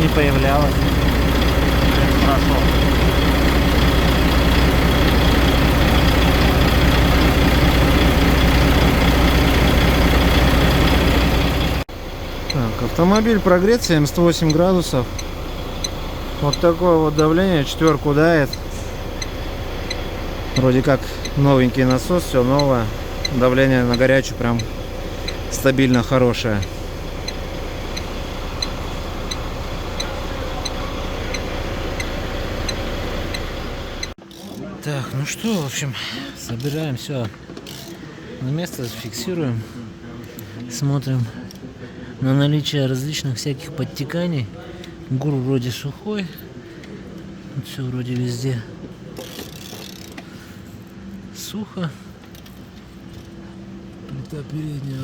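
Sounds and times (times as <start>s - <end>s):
diesel truck engine idling: 0.0s - 34.2s.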